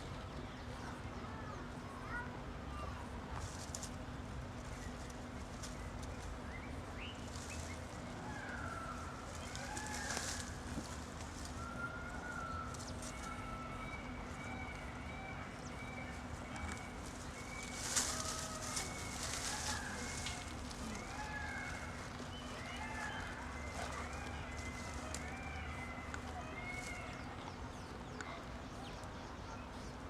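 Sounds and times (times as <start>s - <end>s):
birds chirping: 0.0s - 30.0s
low steady hum: 0.0s - 30.0s
rustling: 4.6s - 27.2s.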